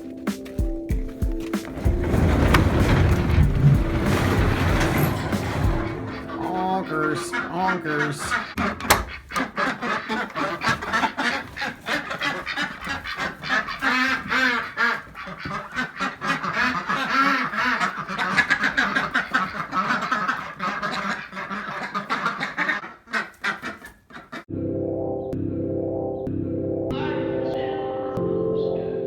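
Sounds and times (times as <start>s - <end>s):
ducks quacking: 1.4s - 24.5s.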